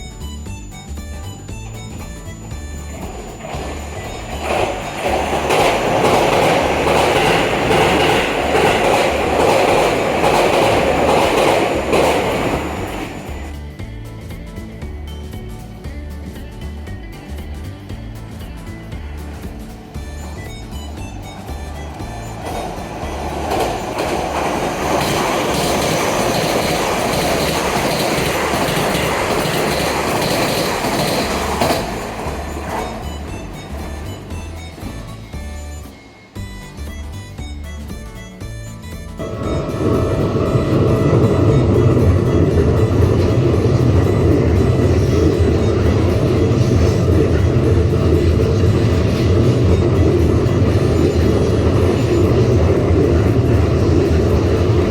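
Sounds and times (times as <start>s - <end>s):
train rail rumble: 0.0s - 54.9s
wheel clacks over rail joints: 1.2s - 35.5s.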